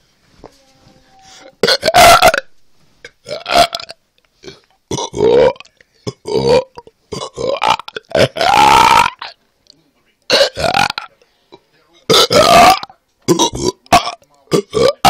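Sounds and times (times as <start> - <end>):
person belching loudly: 1.6 - 2.5, 3.2 - 9.4, 10.3 - 11.1, 12.1 - 15.0.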